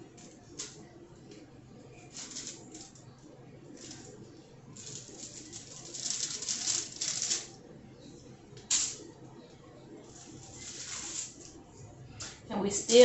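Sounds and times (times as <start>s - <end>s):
rustling and crinkling handling: 4.8s - 7.5s.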